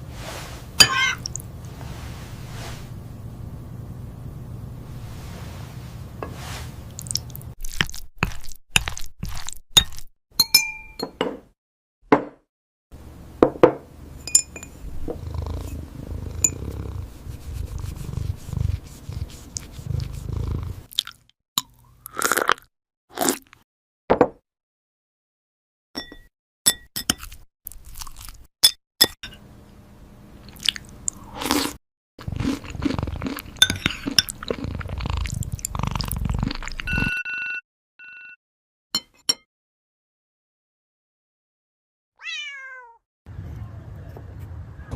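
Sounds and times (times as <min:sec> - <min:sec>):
cat crunching food: 0:32.2 - 0:36.9.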